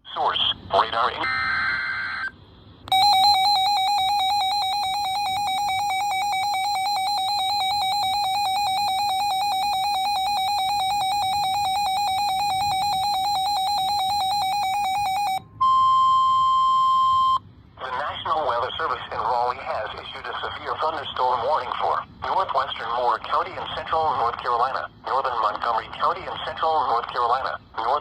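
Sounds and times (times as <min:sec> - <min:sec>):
buzzy warbling alarm tone: 0:02.9 - 0:17.4
steady single tone: 0:02.9 - 0:17.5.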